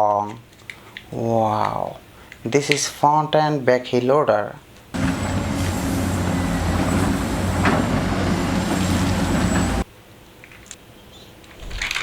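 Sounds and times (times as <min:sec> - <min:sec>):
truck engine running: 0:05.0 - 0:09.8.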